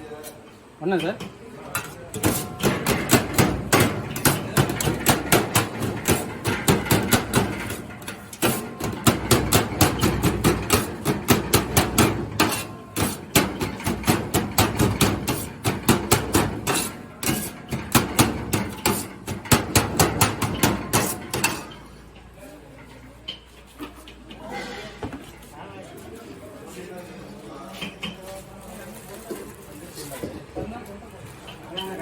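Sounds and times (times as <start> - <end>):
kitchen utensil knocking: 1.8 - 21.8.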